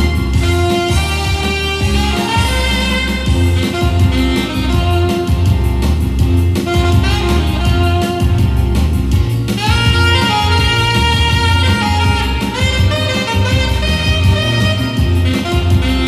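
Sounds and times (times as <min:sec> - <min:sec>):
pop backing track with bass and drums: 0:00.0 - 0:16.0
saxophone melody: 0:00.0 - 0:16.0.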